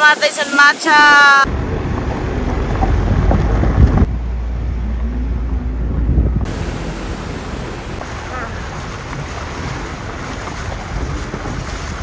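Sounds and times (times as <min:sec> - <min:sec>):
wind rumbling on microphone: 0:01.5 - 0:12.0
waterfall roar: 0:06.5 - 0:12.0.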